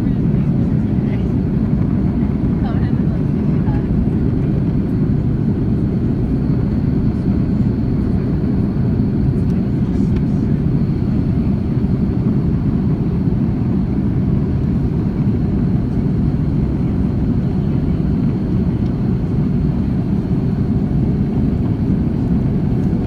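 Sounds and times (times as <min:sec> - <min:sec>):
airliner cabin noise: 0:00.0 - 0:23.0.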